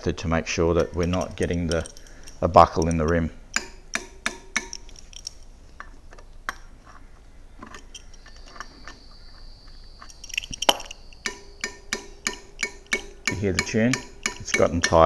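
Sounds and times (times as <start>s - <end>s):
spanner clicking on spoke nipples: 0.0s - 15.0s
allen key tapping steel spokes: 0.6s - 9.0s, 9.7s - 15.0s.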